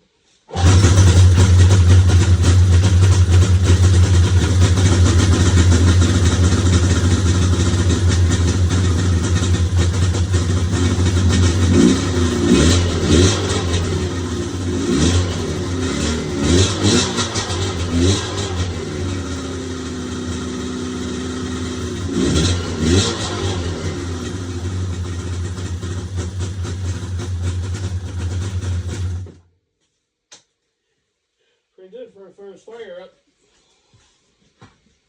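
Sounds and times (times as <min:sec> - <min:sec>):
snowmobile engine revving: 0:00.5 - 0:26.4.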